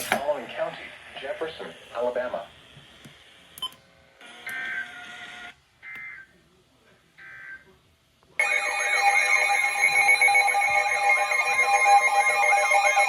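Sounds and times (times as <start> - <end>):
steady attention tone: 8.4 - 13.0.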